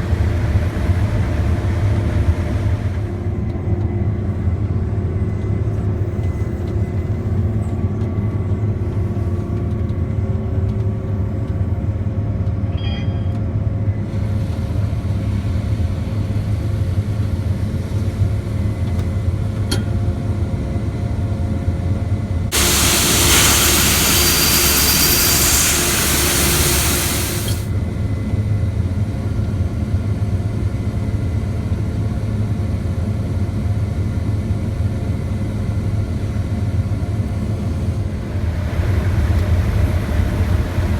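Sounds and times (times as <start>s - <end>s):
combine harvester droning: 22.5s - 27.7s
loud hiss: 22.5s - 27.7s.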